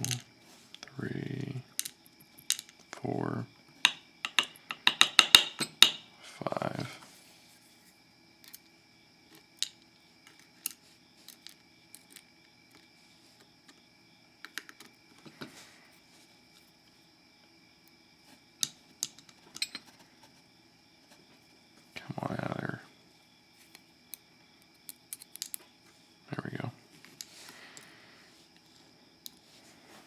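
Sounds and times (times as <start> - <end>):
small metal tools clicking: 3.9 - 6.0, 24.8 - 25.6.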